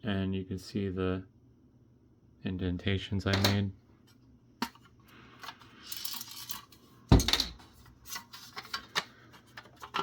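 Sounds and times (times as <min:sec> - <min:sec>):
metal parts and tools clinking: 0:05.5 - 0:09.0.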